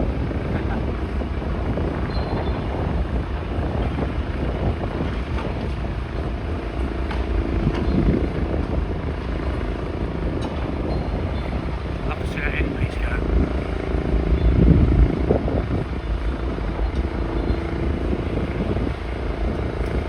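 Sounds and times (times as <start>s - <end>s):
low engine rumble: 0.0s - 20.0s.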